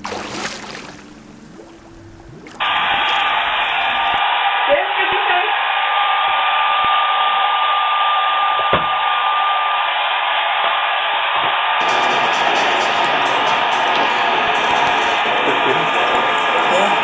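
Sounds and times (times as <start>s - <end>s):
thin steady whine: 0.0s - 4.2s, 11.8s - 17.0s
loud steady rushing noise: 11.8s - 17.0s.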